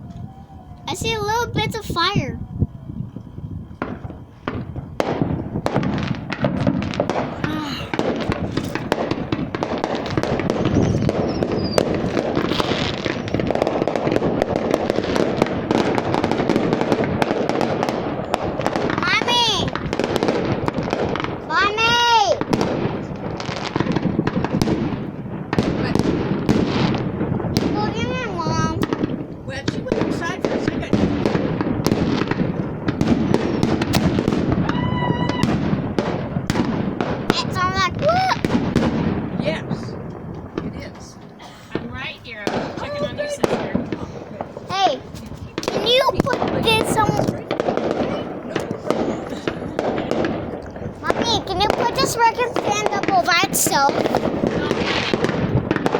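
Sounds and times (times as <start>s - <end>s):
firework whistle: 0.0s - 27.1s, 31.2s - 36.2s
fireworks crackling and banging: 0.0s - 55.9s.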